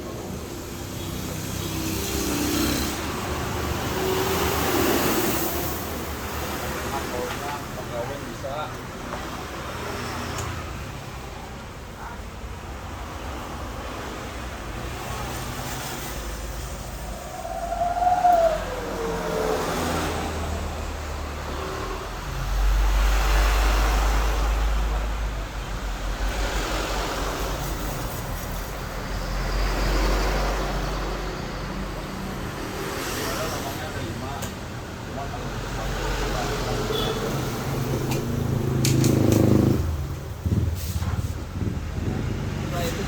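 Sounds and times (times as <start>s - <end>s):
passing road traffic: 0.0s - 43.0s
rising then falling tone: 16.9s - 20.8s.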